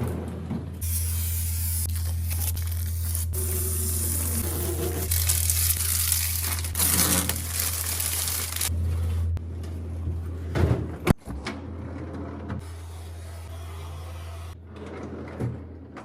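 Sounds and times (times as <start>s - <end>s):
low hum: 0.0s - 14.8s
plastic packaging crinkling: 1.9s - 8.7s.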